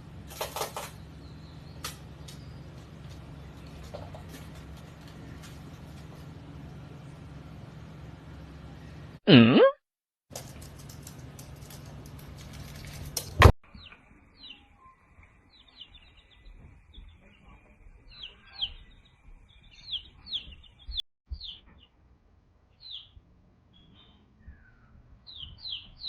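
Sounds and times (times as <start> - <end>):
small birds chirping: 0.0 - 9.2, 10.9 - 21.9, 22.7 - 26.0.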